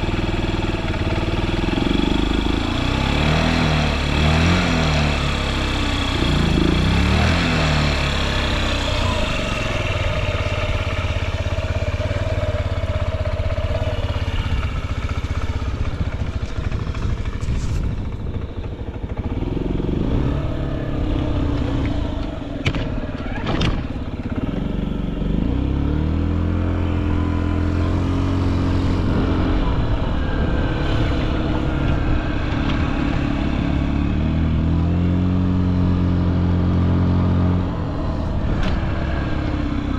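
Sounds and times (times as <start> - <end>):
scooter engine idling and revving: 0.0 - 39.9.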